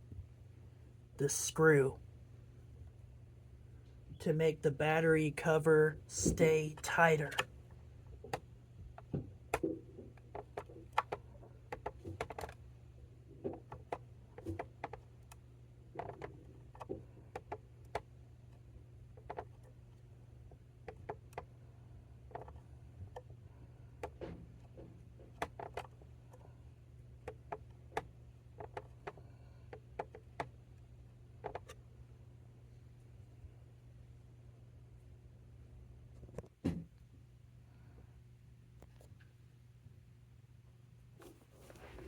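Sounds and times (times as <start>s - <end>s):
plastic body knocking: 36.6s - 36.9s.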